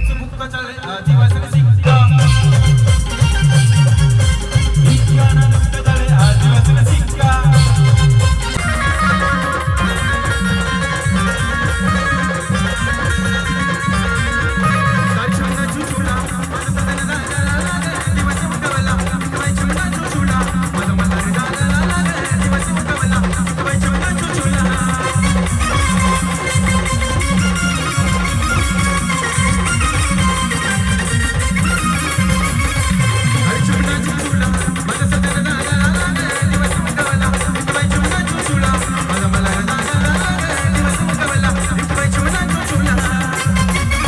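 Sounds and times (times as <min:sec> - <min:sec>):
heavy bass beat: 0:00.0 - 0:44.0
rattling percussion: 0:00.0 - 0:44.0
brass band music: 0:01.8 - 0:17.0, 0:24.5 - 0:44.0.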